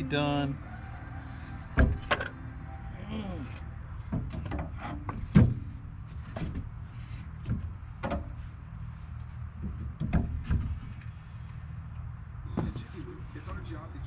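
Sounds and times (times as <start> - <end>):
steady low hum: 0.0 - 14.0
knocks and clunks of fence building: 1.6 - 2.4, 3.6 - 11.8, 12.4 - 13.3.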